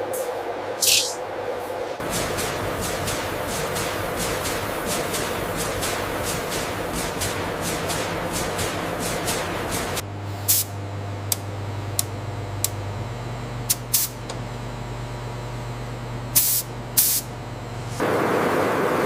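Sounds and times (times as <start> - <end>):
machinery humming: 0.0 - 19.0
short sharp hisses: 0.8 - 1.2
loud rushing noise: 0.8 - 2.1.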